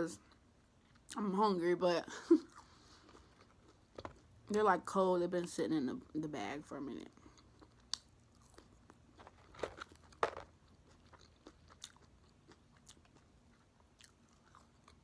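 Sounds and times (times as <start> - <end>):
person chewing: 2.5 - 4.5, 7.2 - 15.0.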